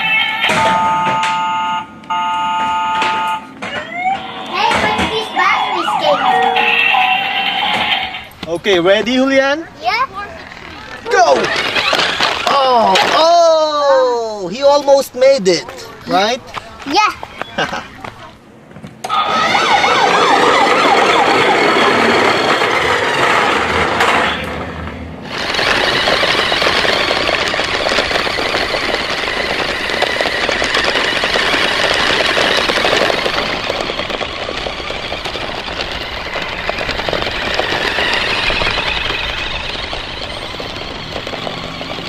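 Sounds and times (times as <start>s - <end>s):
wavering siren-like tone: 0.0s - 8.2s, 19.1s - 23.8s
toy car motor whirring: 10.0s - 12.8s, 19.1s - 23.7s, 25.3s - 42.0s.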